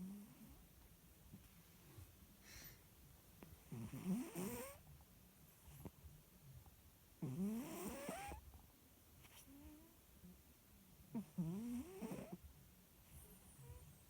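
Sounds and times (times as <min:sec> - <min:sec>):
cat snoring: 0:00.0 - 0:00.5, 0:03.6 - 0:04.8, 0:07.2 - 0:08.4, 0:11.1 - 0:12.4
cat breathing softly: 0:01.8 - 0:02.9.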